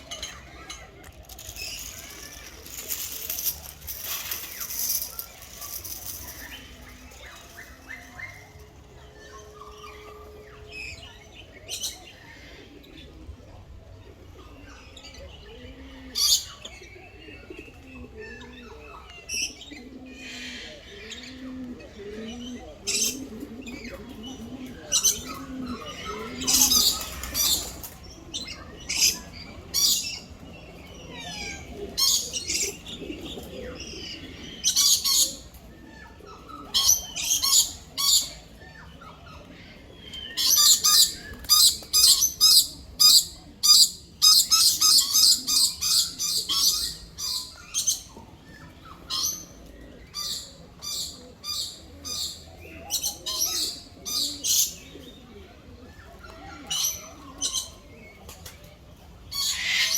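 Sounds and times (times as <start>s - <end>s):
birds cooing: 0.0s - 59.9s.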